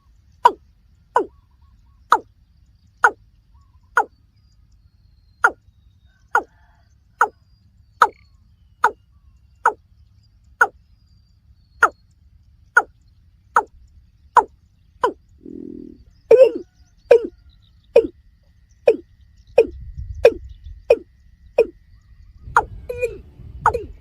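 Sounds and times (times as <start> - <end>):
bird calling: 0.0 - 2.3, 2.9 - 4.2, 5.4 - 7.4, 8.0 - 9.8, 11.8 - 12.0, 12.7 - 24.0.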